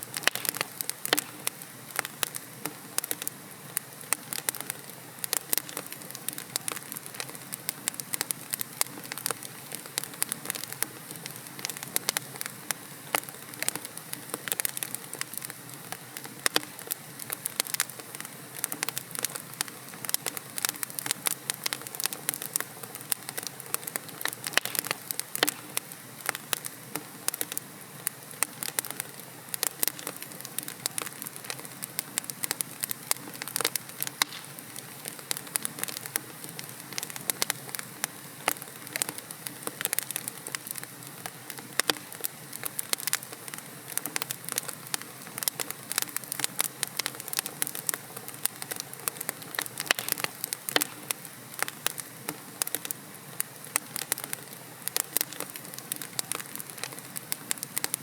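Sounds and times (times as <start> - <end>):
hiss of flames: 0.0 - 58.0
logs crackling and popping: 0.0 - 58.0.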